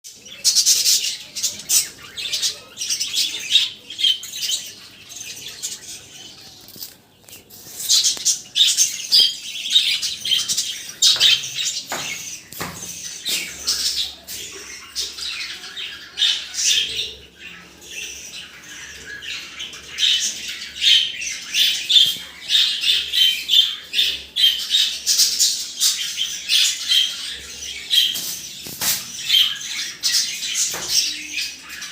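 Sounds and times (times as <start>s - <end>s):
small birds chirping: 0.0s - 31.9s.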